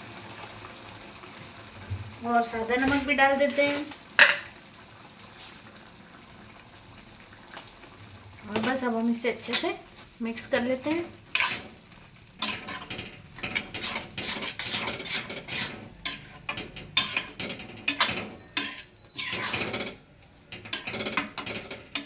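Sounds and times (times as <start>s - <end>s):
spoon scraping a pan: 2.6s - 4.6s, 8.4s - 22.0s.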